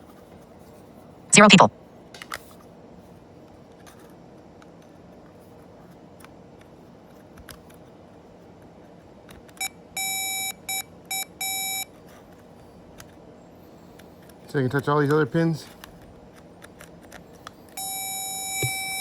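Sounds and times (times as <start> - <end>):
continuity tester beeping: 9.6 - 11.9, 17.8 - 19.0.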